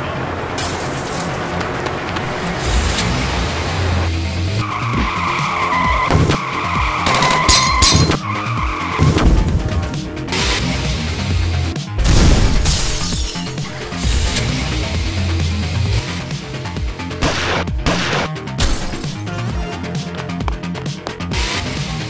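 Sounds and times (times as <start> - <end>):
car tyres squealing: 0.0 - 11.4
car engine noise: 0.0 - 22.0
sharp hits: 12.0 - 14.7, 17.2 - 19.3.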